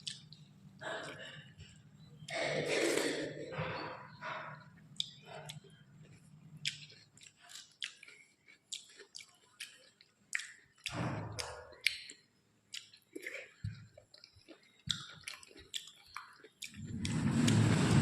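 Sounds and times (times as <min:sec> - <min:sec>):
wet mouth clicks: 0:00.0 - 0:00.4, 0:05.0 - 0:05.8, 0:06.6 - 0:16.8
chewing food: 0:00.0 - 0:02.5, 0:04.1 - 0:17.8
louder noisy sound: 0:17.0 - 0:18.0.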